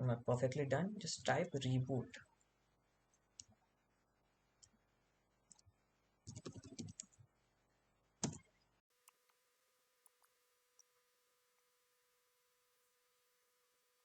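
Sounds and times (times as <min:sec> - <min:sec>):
computer keyboard typing: 0:05.5 - 0:07.2.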